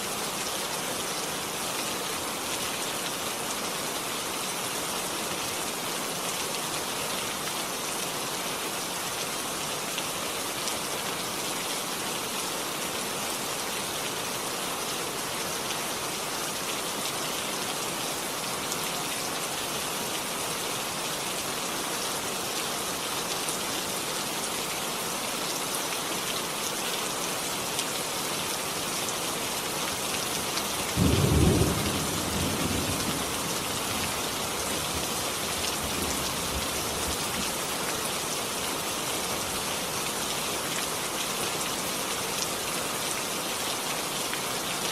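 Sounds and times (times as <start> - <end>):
steady rainfall: 0.0 - 44.9
low rumble of thunder: 31.0 - 34.2.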